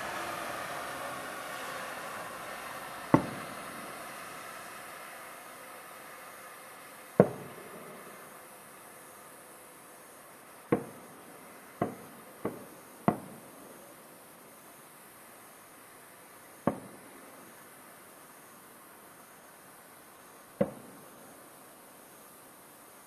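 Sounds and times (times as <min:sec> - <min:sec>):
firework shells bursting: 0:03.1 - 0:04.2, 0:07.2 - 0:08.3.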